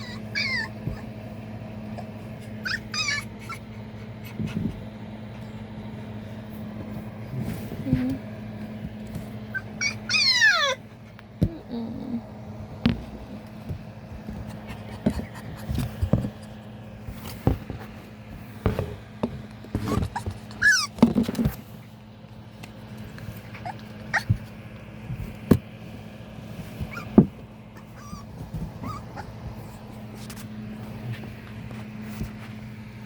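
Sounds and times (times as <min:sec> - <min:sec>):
puppies whimpering: 0:00.0 - 0:04.4, 0:09.4 - 0:12.3, 0:19.8 - 0:21.4, 0:23.3 - 0:24.5, 0:26.8 - 0:29.9
steady low hum: 0:00.0 - 0:33.0.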